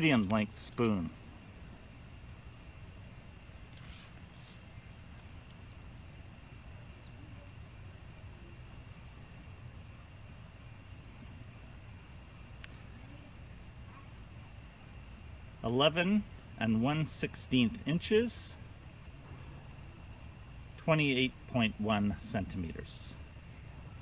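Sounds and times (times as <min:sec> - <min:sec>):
low hiss: 0:00.0 - 0:24.0
high-pitched insect chirping: 0:15.3 - 0:24.0.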